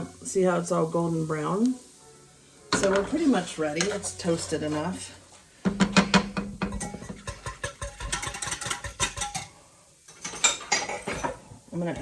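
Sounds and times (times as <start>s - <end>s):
dishes and utensils clinking: 2.7s - 4.9s, 5.6s - 12.0s.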